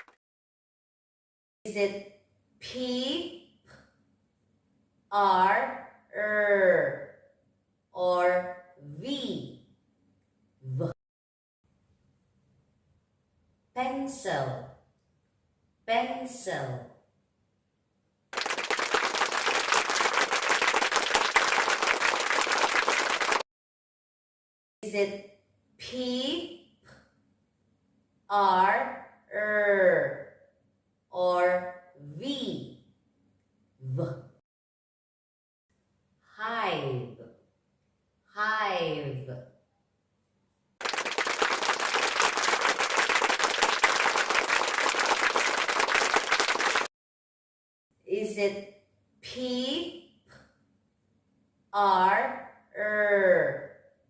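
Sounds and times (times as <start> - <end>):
many hands clapping: 0.0 - 0.2, 18.3 - 23.4, 40.8 - 46.9
crowd applause: 18.4 - 23.4, 40.8 - 46.9.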